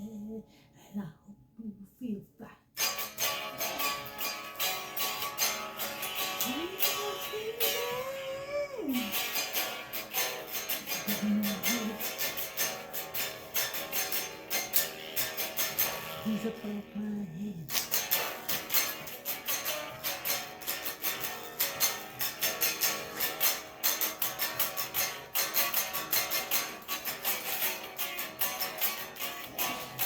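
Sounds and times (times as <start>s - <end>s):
low held vocal notes: 0.0s - 2.7s, 6.3s - 9.4s, 10.9s - 12.3s, 16.0s - 17.8s
strummed guitar music: 2.8s - 30.0s
wordless vocal glide: 6.4s - 9.2s, 11.1s - 12.1s.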